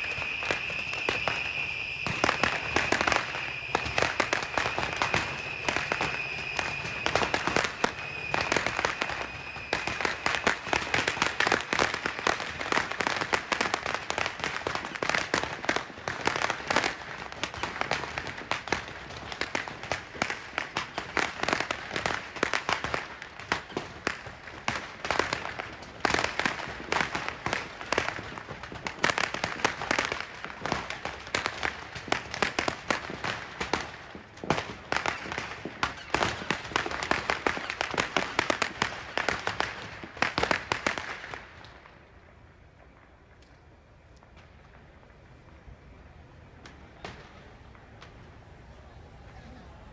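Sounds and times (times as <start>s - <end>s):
high firework whistle: 0.0s - 28.2s
fireworks popping and crackling: 0.0s - 49.9s.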